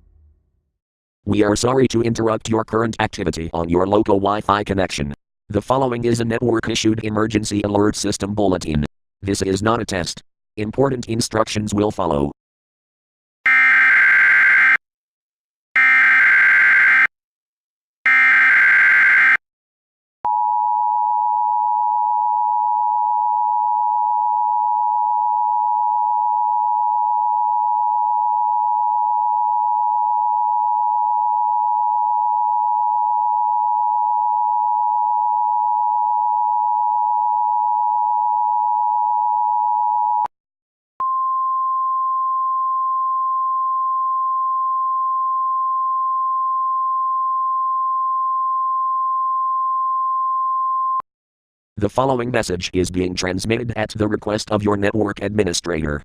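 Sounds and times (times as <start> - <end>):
single steady tone: 20.3 - 40.3, 41.0 - 51.0.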